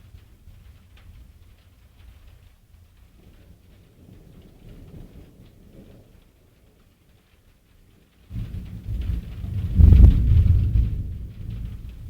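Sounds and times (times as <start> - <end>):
faint rain: 0.0 - 12.0
low thunder rumbling: 8.3 - 12.0.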